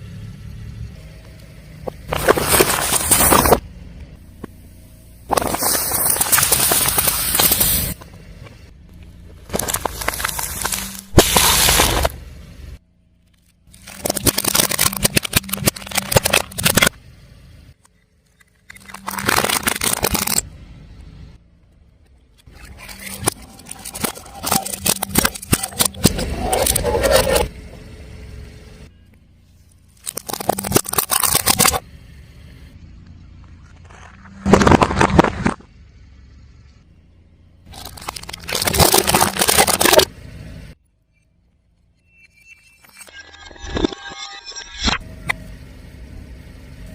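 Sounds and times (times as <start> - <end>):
car engine hum: 0.0 - 18.3, 18.9 - 40.8, 45.0 - 46.9
tyre crushing crunchy objects: 1.8 - 3.6, 5.3 - 8.0, 9.4 - 12.2, 18.7 - 20.5, 30.0 - 31.8, 33.7 - 35.7, 37.7 - 40.1.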